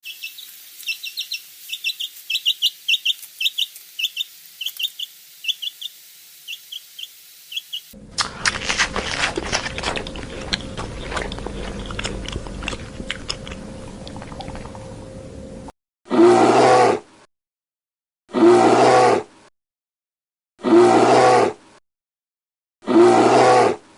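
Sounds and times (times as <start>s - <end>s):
bird chirping: 0.0s - 8.0s
crackly background noise: 8.2s - 15.7s.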